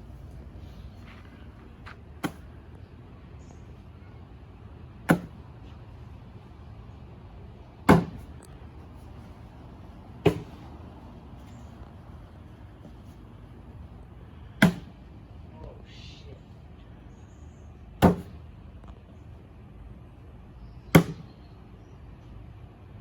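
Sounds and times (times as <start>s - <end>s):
bean bags thudding on board: 7.8s - 8.5s, 10.2s - 10.6s, 14.5s - 15.0s.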